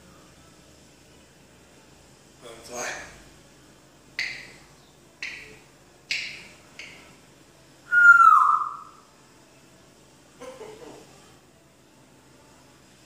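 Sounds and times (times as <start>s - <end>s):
parrot whistle gliding down: 7.9s - 9.0s.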